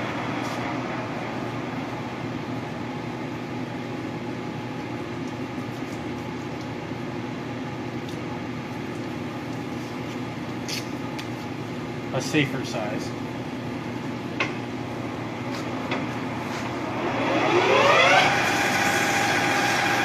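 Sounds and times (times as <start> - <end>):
machine tool droning: 14.4 - 20.0.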